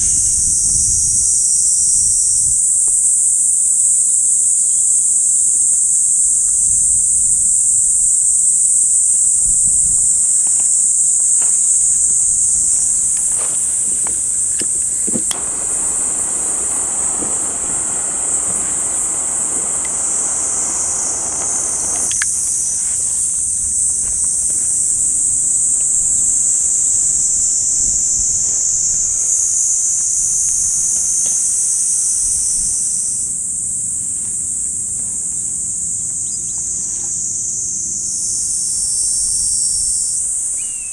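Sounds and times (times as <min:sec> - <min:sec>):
insects chirring: 0:00.0 - 0:40.9
rustling noise: 0:10.1 - 0:25.2
sharp clicks: 0:12.9 - 0:22.6.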